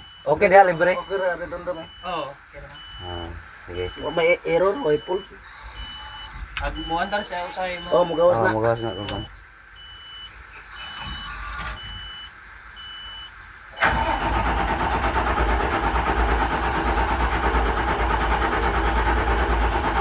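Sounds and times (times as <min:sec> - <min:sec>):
engine starting and idling: 0:03.8 - 0:07.1, 0:10.5 - 0:12.2, 0:13.7 - 0:20.0.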